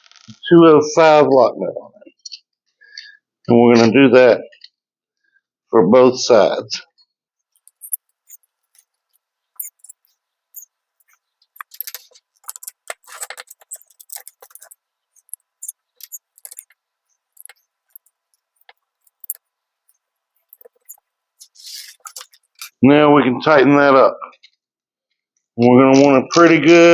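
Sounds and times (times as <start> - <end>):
small metal hardware clicking: 7.6 - 8.9, 9.6 - 16.8, 17.4 - 19.4, 20.4 - 22.7.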